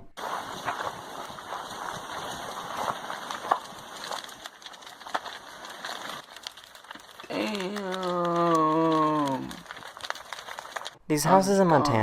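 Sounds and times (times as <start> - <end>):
burning wood crackling and popping: 0.1 - 11.1
drawn-out voice: 7.2 - 9.7.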